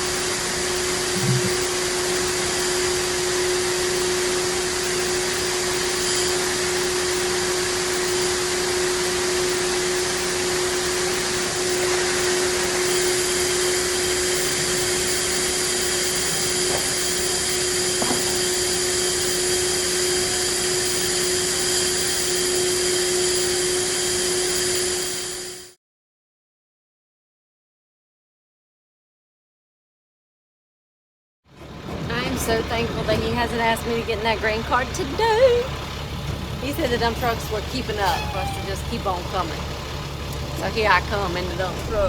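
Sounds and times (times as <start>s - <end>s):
machine hissing and humming: 0.0s - 25.8s, 31.6s - 42.0s.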